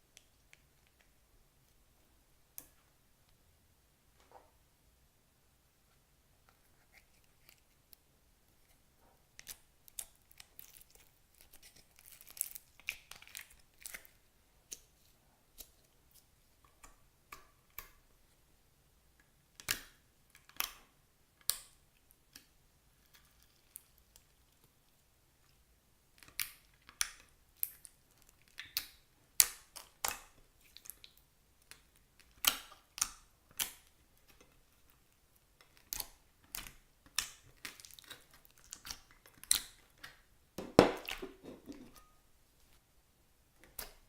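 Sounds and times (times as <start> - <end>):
slime popping and crackling: 9.4 - 14.2, 35.7 - 40.2.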